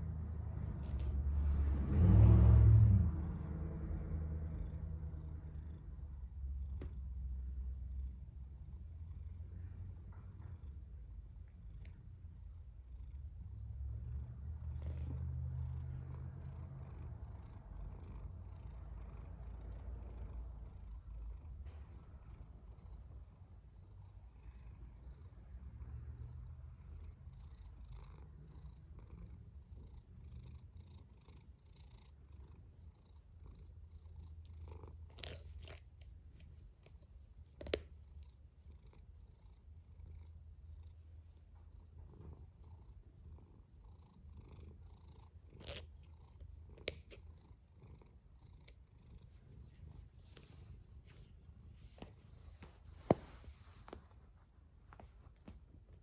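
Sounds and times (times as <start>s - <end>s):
cat snoring: 12.3s - 23.1s, 23.7s - 35.8s, 42.0s - 49.3s.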